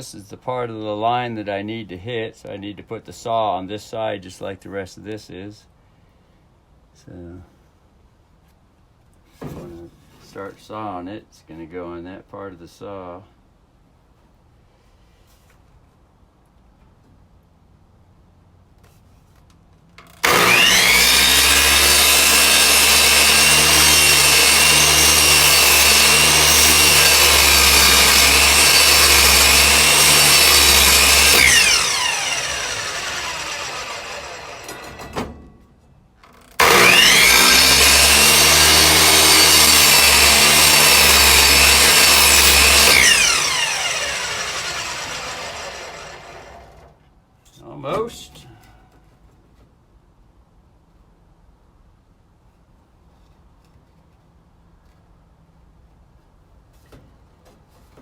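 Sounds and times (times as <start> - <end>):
electric miter saw cutting wood: 20.1 - 35.2, 36.5 - 47.0.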